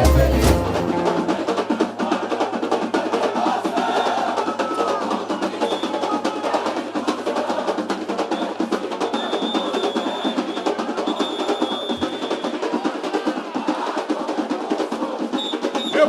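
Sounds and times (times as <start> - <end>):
bass drums: 0.0 - 1.6
rapid snare drum strokes: 0.0 - 16.0
samba drumming: 0.0 - 16.0.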